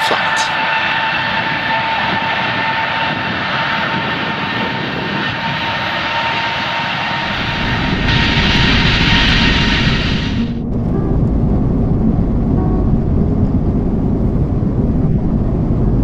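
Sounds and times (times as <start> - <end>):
jet engines from cabin: 0.0 - 16.0
deep engine rumble: 6.8 - 16.0.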